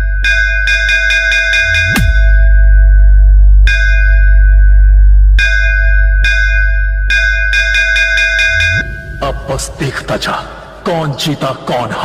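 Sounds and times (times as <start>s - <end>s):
deep sustained bass tone: 1.6s - 7.8s.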